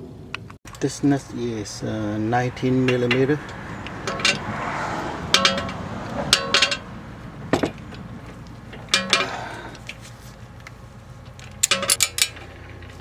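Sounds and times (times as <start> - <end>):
steel hand tools clinking: 2.8 - 4.5, 5.3 - 6.9, 7.5 - 13.0.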